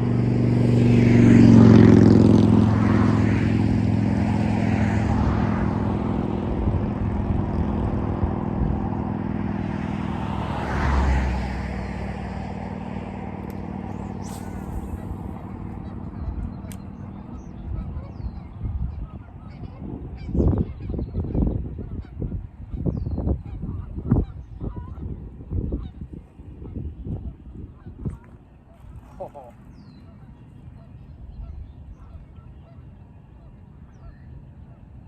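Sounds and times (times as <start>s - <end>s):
engine passing by: 0.0s - 21.0s.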